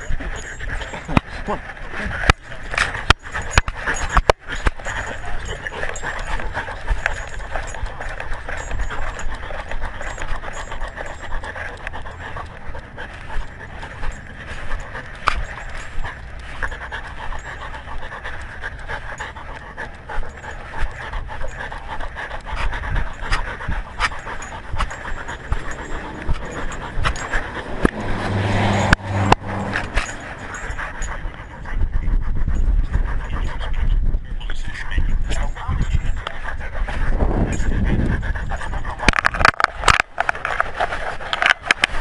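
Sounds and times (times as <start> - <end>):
dog panting: 0.0 - 42.0
sharp clicks and knocks: 2.2 - 20.9, 22.0 - 31.0, 37.5 - 42.0.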